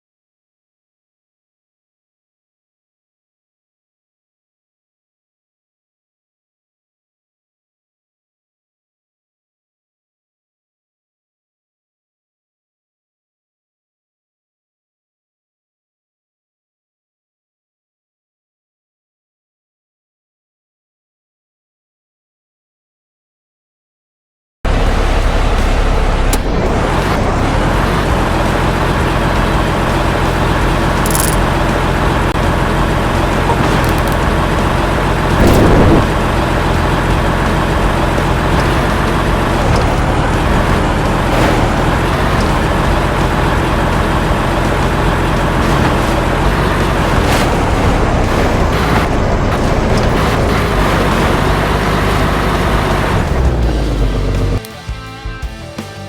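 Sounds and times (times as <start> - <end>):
vehicle engine running: 24.7 - 56.0.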